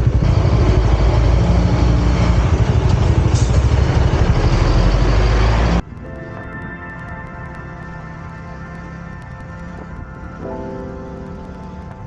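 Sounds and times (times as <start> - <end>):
vehicle engine running at low revs: 0.0 - 5.8.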